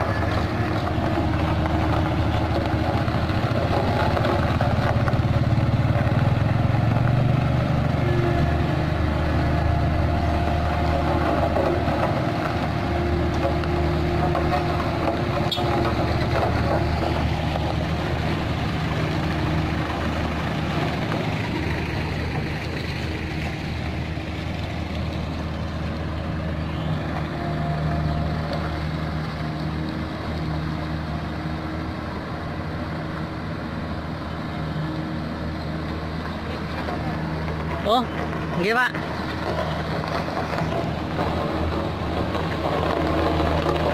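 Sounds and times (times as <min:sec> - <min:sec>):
diesel engine running at low revs: 0:00.0 - 0:43.9.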